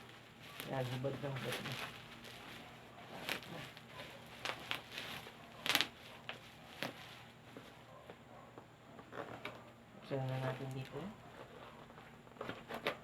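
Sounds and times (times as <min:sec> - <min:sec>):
plastic packaging crackling: 0:00.0 - 0:07.3.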